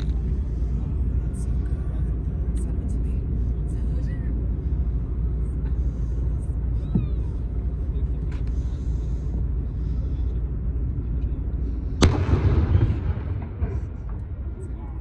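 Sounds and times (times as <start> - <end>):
boat engine rumble: 0.0 - 15.0
loud echoing bang: 12.0 - 14.2.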